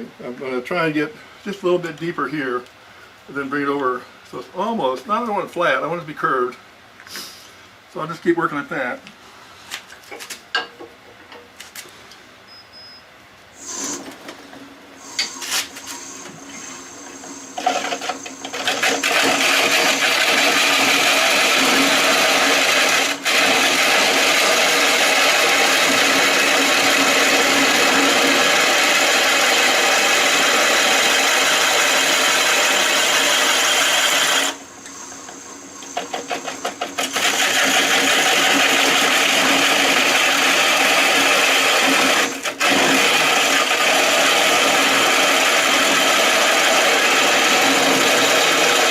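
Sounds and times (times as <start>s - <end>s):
lathe motor hum: 15.0s - 48.9s
gouge cutting wood on lathe: 17.6s - 34.6s, 36.0s - 48.9s.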